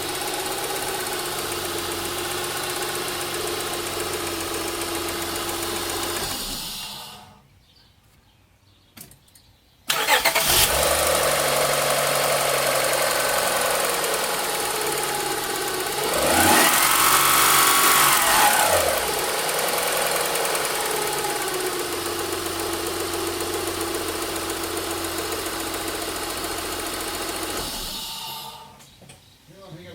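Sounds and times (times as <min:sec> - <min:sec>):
car engine starting and idling: 0:00.0 - 0:07.4, 0:09.9 - 0:28.8
engine revving: 0:09.9 - 0:28.6.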